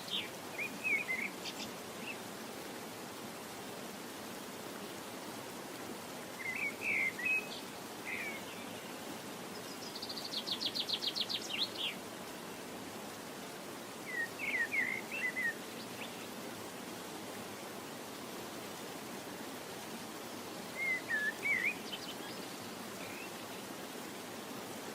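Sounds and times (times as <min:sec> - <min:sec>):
songbird chirping and trilling: 0:00.0 - 0:02.2, 0:06.4 - 0:12.0, 0:14.0 - 0:16.3, 0:20.6 - 0:23.6
background hiss: 0:00.0 - 0:24.9.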